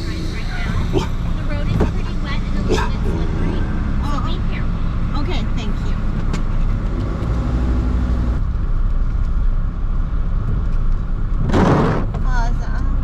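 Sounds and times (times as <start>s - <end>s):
faint engine tone: 0.0s - 6.9s
van engine and road rumble: 0.0s - 13.0s.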